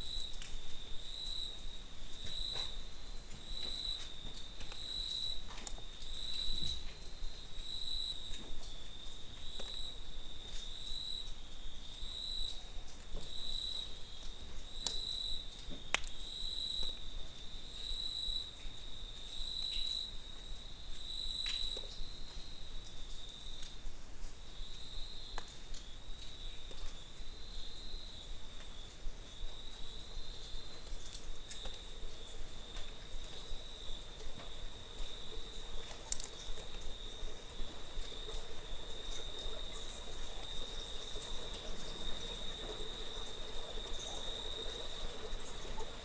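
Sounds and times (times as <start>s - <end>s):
crickets chirping: 0.0s - 46.0s.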